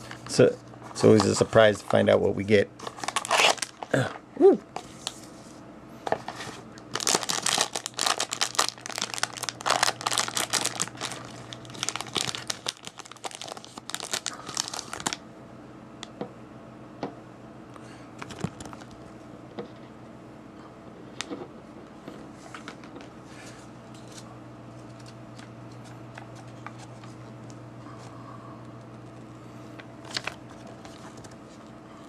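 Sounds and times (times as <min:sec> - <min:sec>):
packaging tearing and crinkling: 0:02.8 - 0:04.1, 0:06.9 - 0:15.2.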